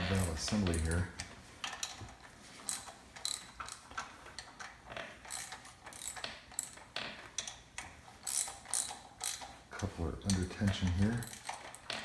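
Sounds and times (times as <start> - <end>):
ratchet wrench clicking: 2.6 - 9.6, 10.3 - 12.0.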